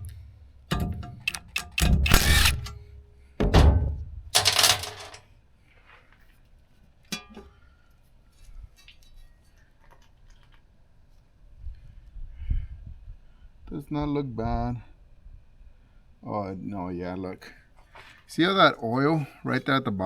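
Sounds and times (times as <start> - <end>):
power tool bursts: 1.3 - 2.8
handling of metal parts: 4.4 - 5.3.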